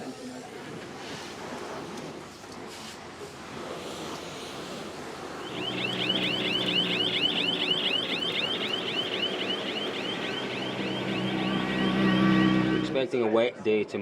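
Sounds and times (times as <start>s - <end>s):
electronic alarm chirping: 5.4s - 13.0s.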